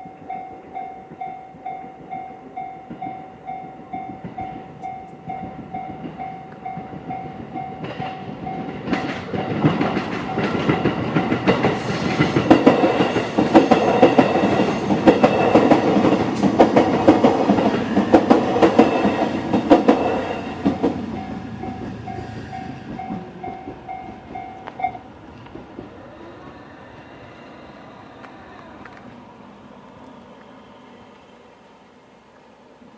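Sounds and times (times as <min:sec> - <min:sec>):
level crossing warning bell: 0:00.0 - 0:09.1, 0:20.1 - 0:25.0
train wheels clattering: 0:05.4 - 0:24.8.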